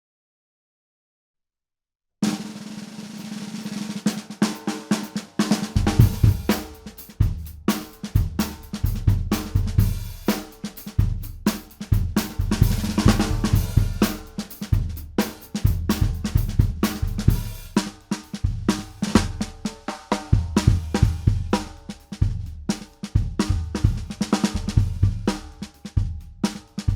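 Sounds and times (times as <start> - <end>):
snare drum roll: 2.2 - 26.9
bass drum beats: 5.6 - 26.9.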